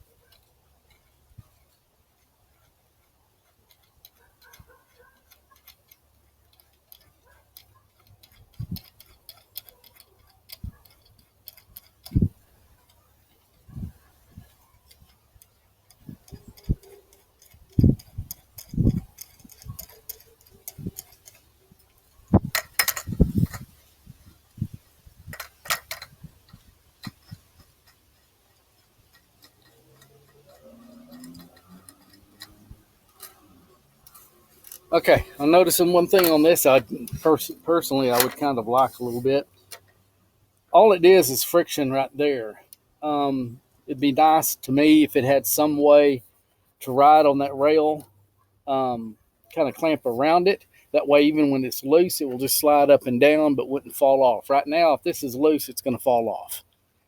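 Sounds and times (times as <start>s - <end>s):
plastic parts clicking and tapping: 0.0s - 40.7s.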